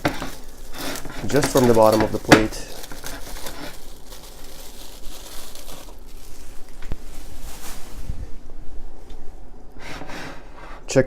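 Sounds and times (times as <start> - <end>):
wet squishing and rubbing of meat: 0.0 - 8.0.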